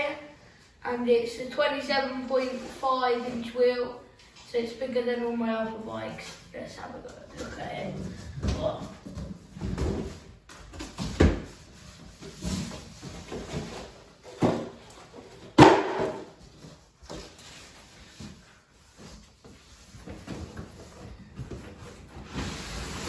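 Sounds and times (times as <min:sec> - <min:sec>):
box knocks and thumps: 0:13.0 - 0:16.4.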